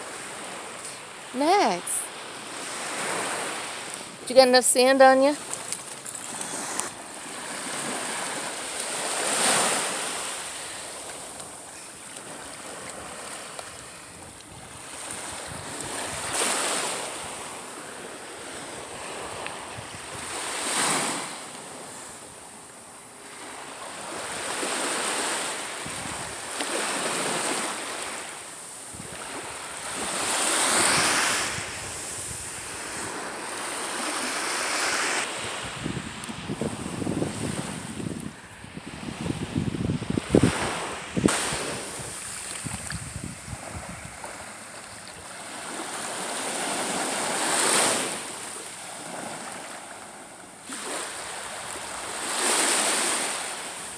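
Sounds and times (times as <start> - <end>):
surf breaking on beach: 24.2 - 49.6.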